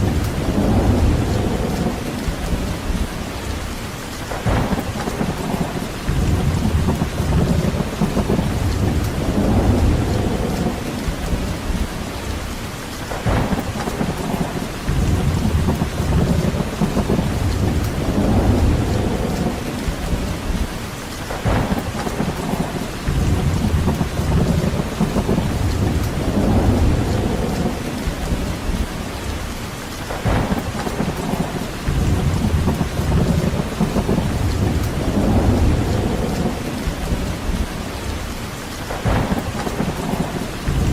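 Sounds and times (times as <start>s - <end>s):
steady rain: 0.0s - 40.9s
deep rumbling: 4.4s - 12.4s, 13.2s - 20.8s, 21.4s - 29.5s, 30.2s - 38.3s.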